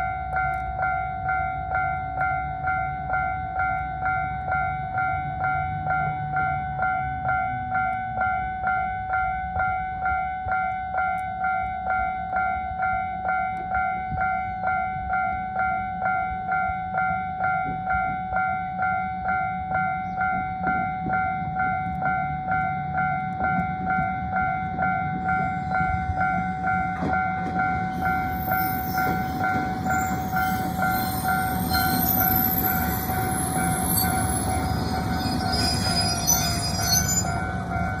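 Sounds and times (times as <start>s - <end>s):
level crossing warning bell: 0.0s - 38.0s
train rumble: 0.0s - 38.0s
train wheels squealing: 25.5s - 38.0s.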